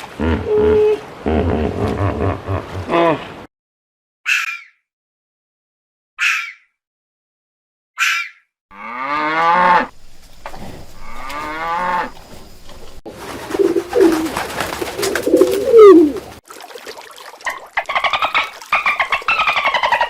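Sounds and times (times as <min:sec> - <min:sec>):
cow mooing: 0:08.7 - 0:09.9, 0:11.0 - 0:12.2
pigeon cooing: 0:13.4 - 0:16.4
pulsed animal calls: 0:15.3 - 0:16.3.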